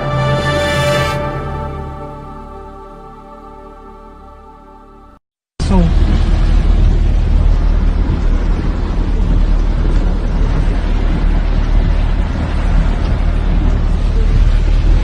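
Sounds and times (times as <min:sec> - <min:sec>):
storm wind buffeting microphone: 0:05.6 - 0:15.0.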